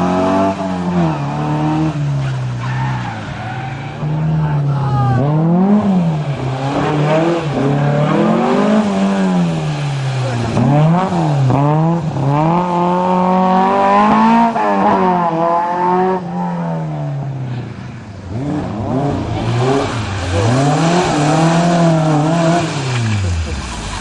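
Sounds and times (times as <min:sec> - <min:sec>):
rally car engine revving: 0:00.0 - 0:24.0.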